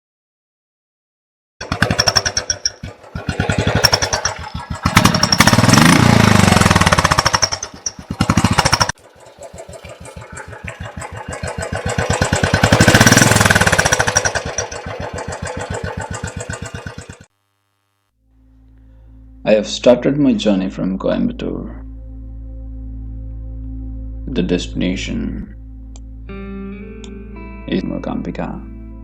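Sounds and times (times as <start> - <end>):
motorcycle engine revving: 1.6 - 17.3.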